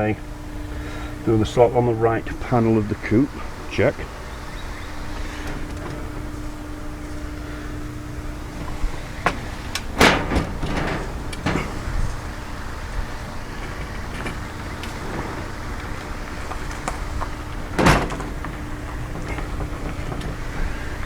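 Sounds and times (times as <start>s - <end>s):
faint hum: 0.0s - 21.0s
steady low rumble: 0.0s - 21.0s
knocks and clatter of parts: 0.1s - 21.0s.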